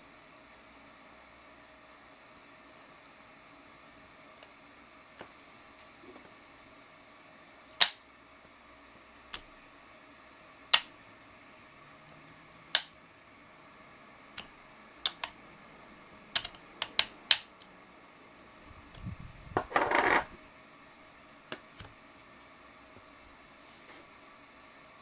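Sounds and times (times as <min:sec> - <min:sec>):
sharp clicks and taps: 0:15.1 - 0:15.4, 0:16.4 - 0:17.5
rustling scrape: 0:23.6 - 0:24.1.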